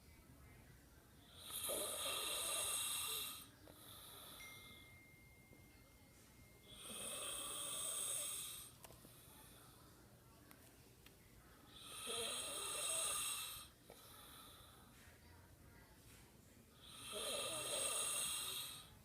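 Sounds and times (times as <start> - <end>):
man snoring: 1.4 - 3.5, 6.8 - 8.7, 11.8 - 13.7, 16.8 - 18.9.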